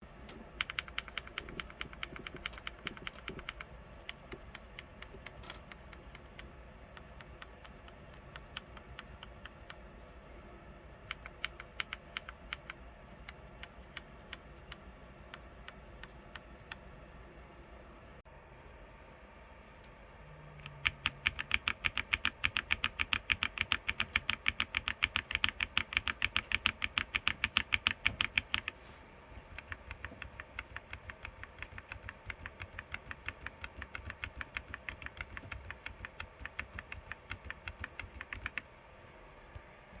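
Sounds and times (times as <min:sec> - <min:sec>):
mechanical keyboard keys clicking: 0:00.3 - 0:09.8, 0:11.1 - 0:16.8, 0:20.6 - 0:28.8, 0:29.4 - 0:38.7.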